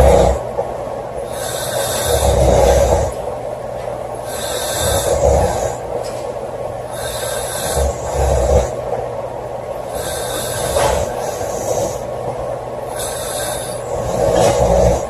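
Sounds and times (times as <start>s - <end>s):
girl snoring: 0.0s - 0.4s, 1.2s - 3.2s, 4.2s - 5.8s, 6.9s - 8.8s, 9.8s - 12.1s, 12.8s - 15.0s.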